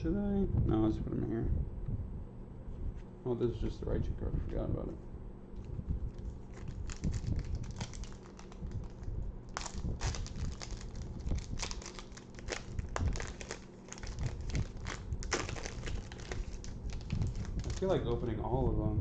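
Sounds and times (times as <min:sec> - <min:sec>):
foil wrapper crinkling: 0:06.1 - 0:18.2.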